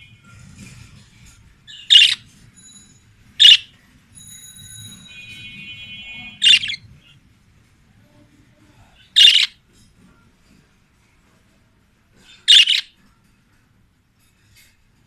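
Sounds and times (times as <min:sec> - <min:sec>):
budgerigar harsh chirps: 0:01.7 - 0:02.2, 0:03.4 - 0:03.7, 0:06.3 - 0:06.8, 0:09.0 - 0:09.6, 0:12.2 - 0:13.0
budgerigar warbling: 0:01.7 - 0:02.2, 0:03.4 - 0:03.7, 0:06.3 - 0:06.8, 0:09.0 - 0:09.6, 0:12.3 - 0:12.9.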